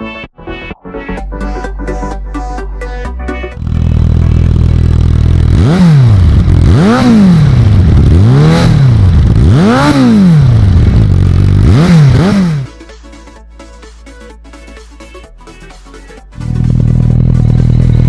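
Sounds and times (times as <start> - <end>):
motorcycle engine revving: 3.6 - 12.7, 16.4 - 18.0.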